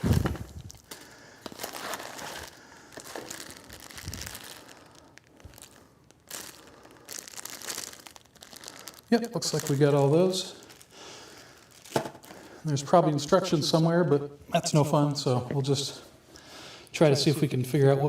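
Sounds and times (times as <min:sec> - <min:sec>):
plastic bags crinkling: 0:00.0 - 0:12.7.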